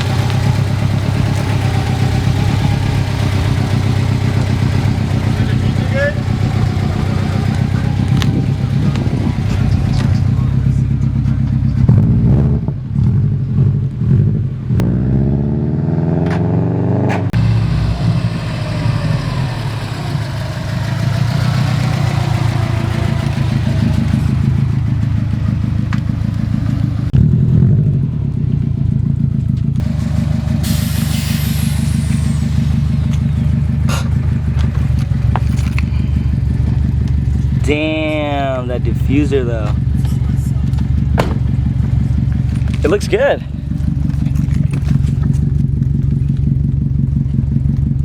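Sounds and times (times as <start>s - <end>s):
car engine running and revving: 0.0s - 48.0s.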